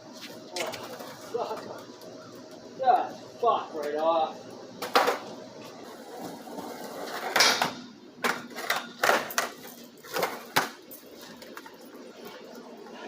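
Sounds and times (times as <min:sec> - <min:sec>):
skateboard wheels rolling on pavement: 0:04.8 - 0:07.6.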